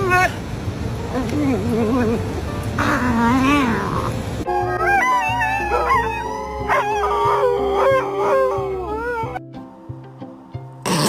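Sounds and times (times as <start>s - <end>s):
dog howling: 2.8s - 9.4s.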